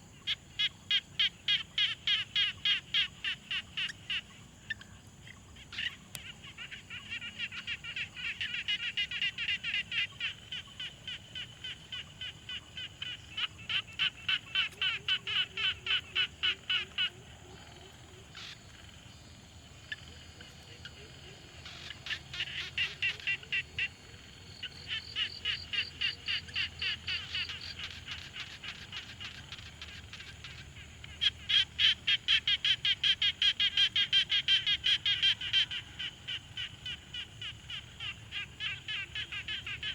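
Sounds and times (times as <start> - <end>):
frogs croaking: 0.0 - 39.9.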